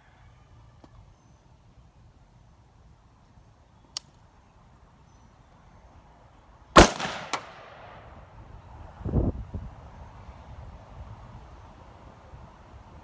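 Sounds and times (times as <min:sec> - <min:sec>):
faint sharp click: 0:03.9 - 0:04.2
rifle shot with echo: 0:06.8 - 0:08.1.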